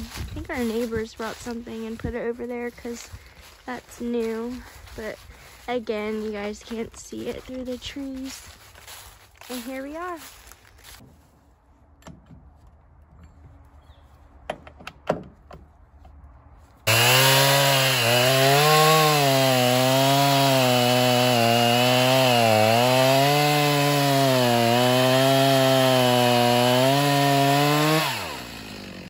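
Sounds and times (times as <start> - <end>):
chainsaw cutting firewood: 0.0 - 11.0, 16.8 - 29.0.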